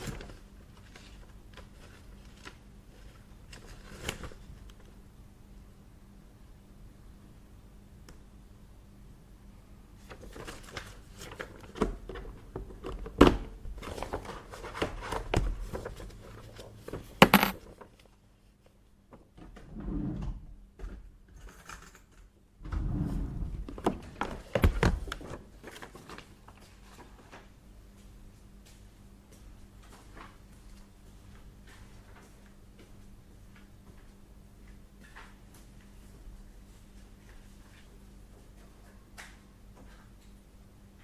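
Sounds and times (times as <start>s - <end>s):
office items clicking and knocking: 16.9s - 17.9s.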